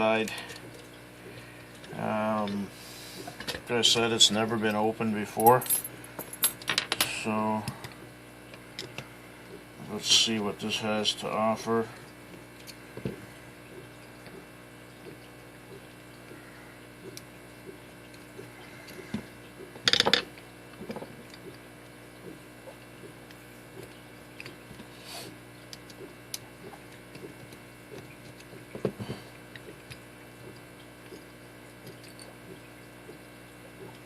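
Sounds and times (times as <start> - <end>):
small metal clicks and knocks: 19.8 - 20.3.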